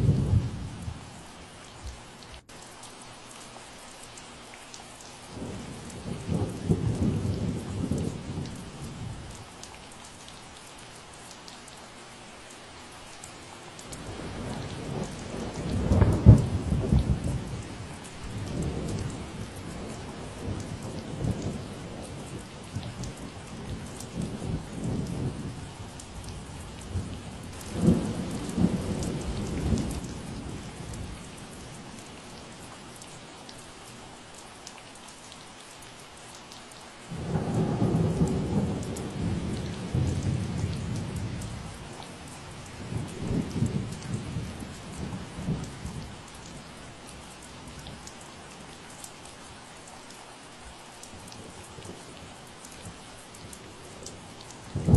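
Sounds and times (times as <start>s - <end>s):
steady rain: 0.0s - 54.9s
rolling thunder: 14.0s - 17.6s, 26.2s - 31.2s, 37.1s - 42.1s.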